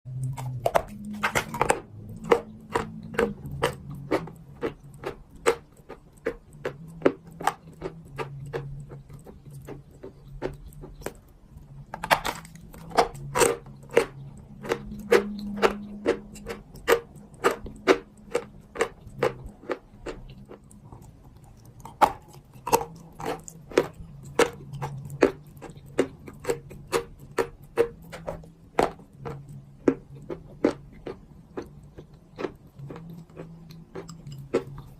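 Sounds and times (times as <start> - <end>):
faint low hum: 0.1 - 34.9
clay crunching: 0.2 - 11.3.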